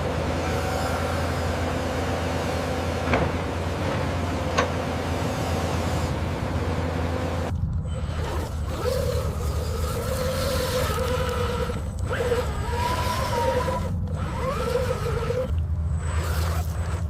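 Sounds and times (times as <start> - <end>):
small electric motors whining: 0.0 - 2.0, 7.7 - 17.0.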